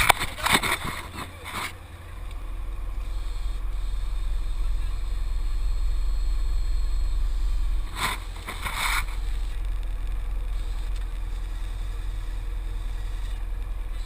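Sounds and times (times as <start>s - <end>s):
atv engine rumbling: 0.0s - 14.0s.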